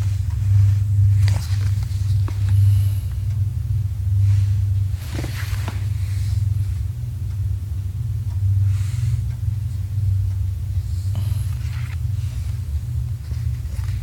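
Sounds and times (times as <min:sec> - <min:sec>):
faint handling noises: 0:00.0 - 0:03.4, 0:04.2 - 0:06.9, 0:10.8 - 0:14.0
steady low rumble: 0:00.0 - 0:14.0.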